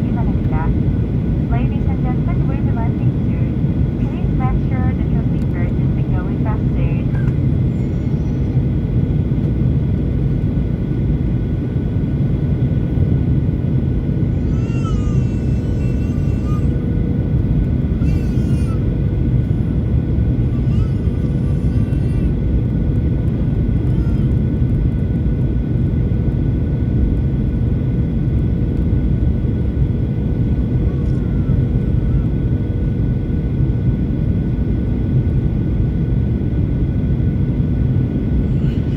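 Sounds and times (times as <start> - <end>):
faint even hums: 0.0 - 8.4
airliner cabin engine roar: 0.0 - 38.9.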